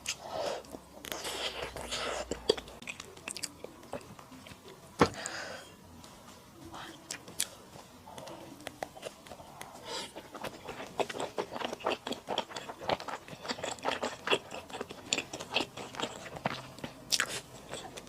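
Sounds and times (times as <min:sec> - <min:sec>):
mouth chewing noodles: 0:00.0 - 0:05.4, 0:06.8 - 0:18.0.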